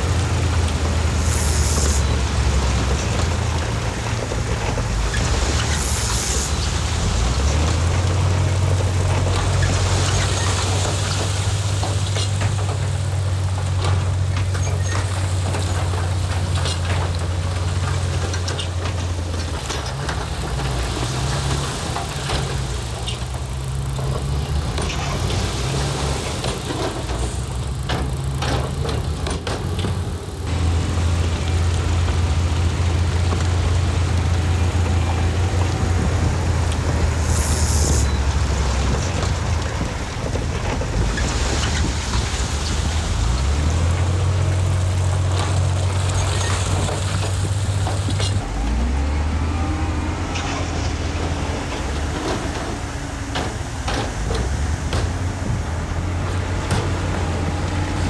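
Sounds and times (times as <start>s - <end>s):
heavy diesel engine humming: 0.0s - 58.0s
sharp clicks and knocks: 7.6s - 49.1s.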